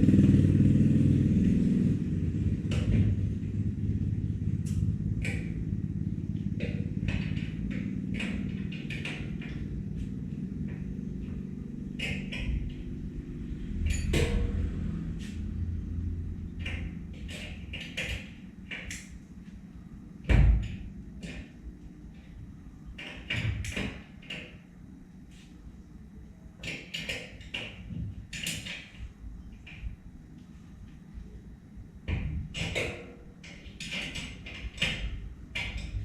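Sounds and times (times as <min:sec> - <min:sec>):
low rumble: 0:00.0 - 0:17.7
knocks clicks and taps: 0:02.6 - 0:03.2, 0:04.6 - 0:13.0, 0:32.0 - 0:36.0.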